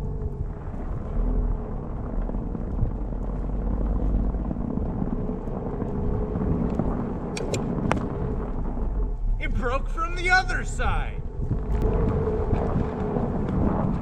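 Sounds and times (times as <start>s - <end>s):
engine and tyres rumbling: 0.0s - 14.0s.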